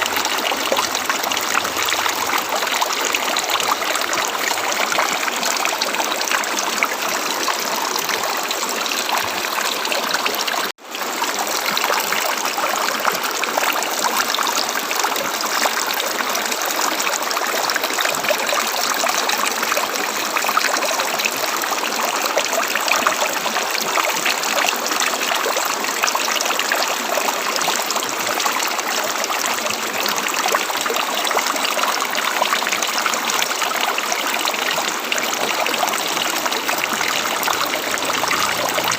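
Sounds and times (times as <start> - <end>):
river water rushing: 0.0 - 16.7, 30.5 - 38.9.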